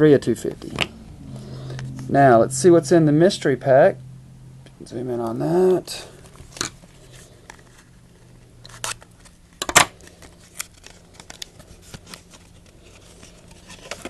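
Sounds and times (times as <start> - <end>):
card pack wrapper tearing: 8.6 - 14.0.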